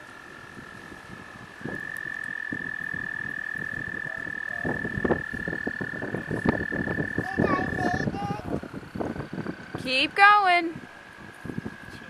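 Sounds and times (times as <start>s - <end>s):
frog high trill: 1.7s - 8.0s.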